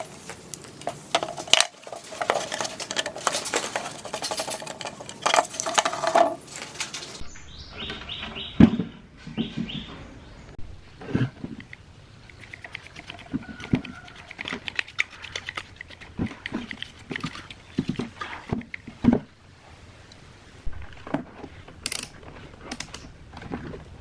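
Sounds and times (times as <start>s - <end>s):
clinks taps and scrapes: 0.7s - 7.2s.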